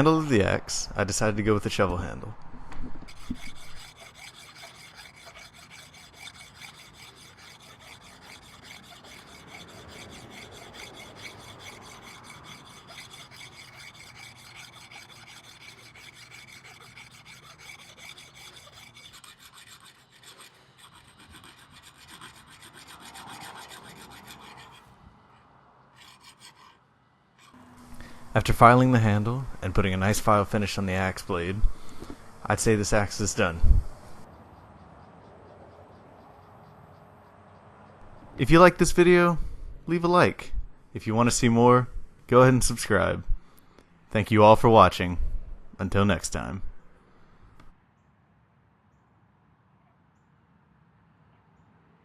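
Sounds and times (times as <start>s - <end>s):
rasp rubbing wooden handle: 3.0s - 25.0s, 26.0s - 26.8s, 27.4s - 28.3s.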